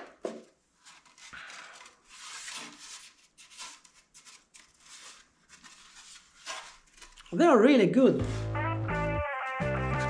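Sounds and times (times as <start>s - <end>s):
plastic scraping and cutting: 0.8s - 7.3s.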